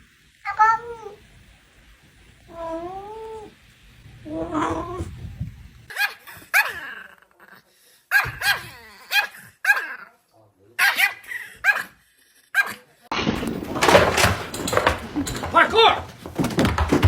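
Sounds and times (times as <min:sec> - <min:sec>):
cat yowling: 0:00.5 - 0:01.2, 0:02.5 - 0:03.6, 0:04.2 - 0:05.4
dog yelping: 0:04.3 - 0:05.1, 0:05.9 - 0:07.1, 0:08.1 - 0:10.0, 0:10.8 - 0:11.9.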